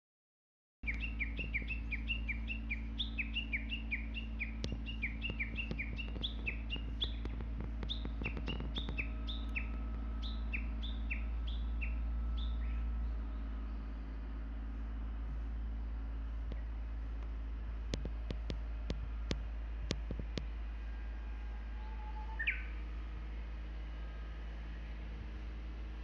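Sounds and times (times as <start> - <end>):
steady low rumble: 0.8 - 26.0
bird calling rapid repeated notes: 0.9 - 12.9, 21.8 - 22.7
light clicks: 4.4 - 10.4, 16.4 - 20.5.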